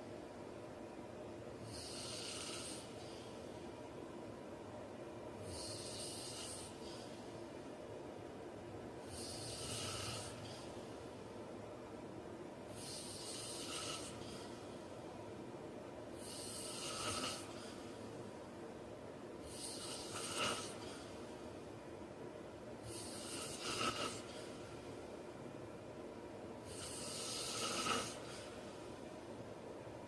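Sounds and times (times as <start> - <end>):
man snoring: 1.6 - 3.1, 5.4 - 7.0, 9.0 - 10.7, 12.7 - 14.7, 16.2 - 17.9, 19.4 - 20.9, 22.8 - 24.4, 26.6 - 28.6.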